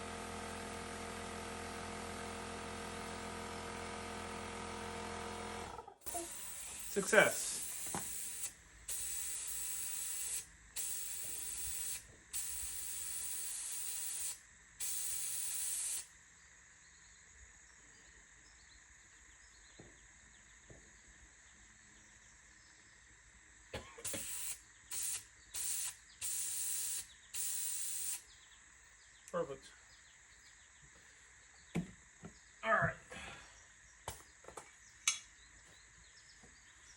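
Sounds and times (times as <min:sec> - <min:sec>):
compressed air hissing: 0:06.0 - 0:16.1, 0:23.8 - 0:28.2.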